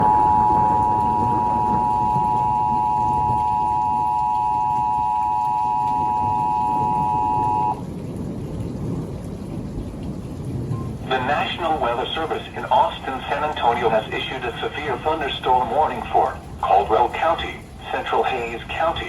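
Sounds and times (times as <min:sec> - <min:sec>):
two-tone emergency alert signal: 0:00.0 - 0:07.8.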